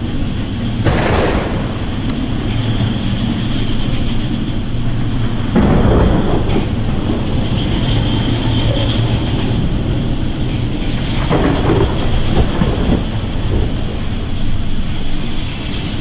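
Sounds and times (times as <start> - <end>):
heavy low rumble: 0.0 - 16.0
wind buffeting the microphone: 0.0 - 16.0
seawater rushing and crashing: 4.9 - 16.0.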